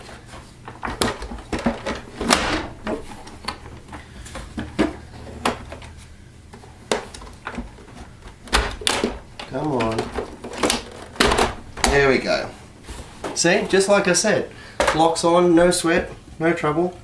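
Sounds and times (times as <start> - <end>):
plastic parts knocking and clicking: 0.0 - 12.2, 14.8 - 15.2.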